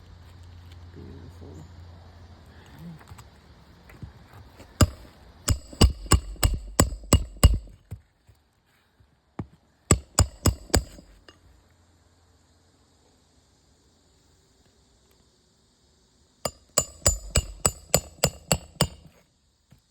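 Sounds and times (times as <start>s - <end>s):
hammer blows with metallic ring: 4.8s - 7.8s, 9.9s - 11.4s, 16.5s - 19.1s.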